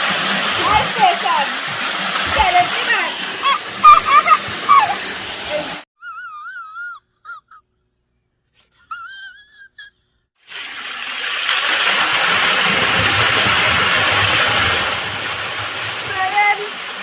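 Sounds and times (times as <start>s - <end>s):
waterfall roaring: 0.0s - 1.6s, 2.2s - 5.8s, 12.0s - 17.0s.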